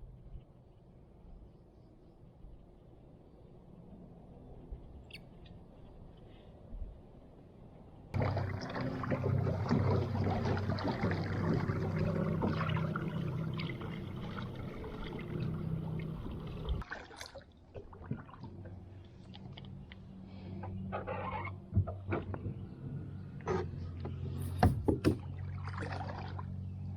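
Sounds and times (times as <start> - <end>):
electric motor humming: 8.2 - 16.8
water splashing around boats: 8.2 - 26.9.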